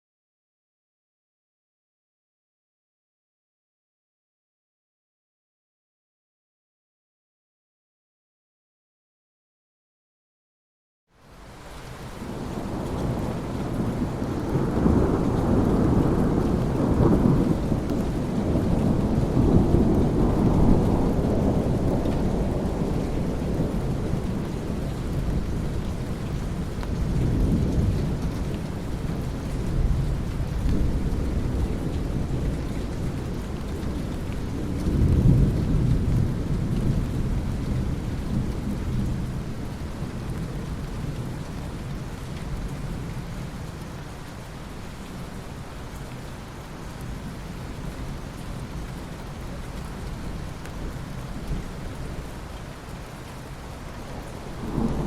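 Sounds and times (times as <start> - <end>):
steady rain: 11.1 - 55.0
rolling thunder: 12.2 - 43.3, 54.1 - 55.0.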